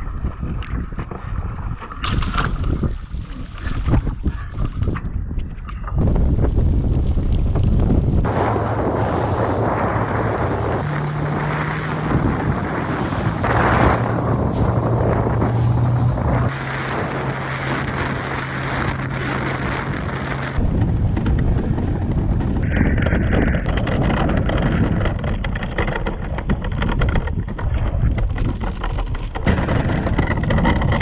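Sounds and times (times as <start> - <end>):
wind buffeting microphone: 0.0 - 31.0
water rushing past boat: 8.2 - 20.8
steady low hum: 8.3 - 20.9.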